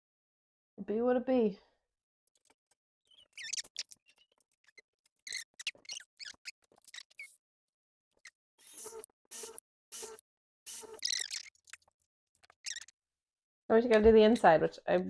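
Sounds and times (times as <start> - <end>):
short squeaks: 3.1 - 7.4, 8.2 - 11.8, 12.4 - 12.9
rasping scrapes: 8.6 - 11.5.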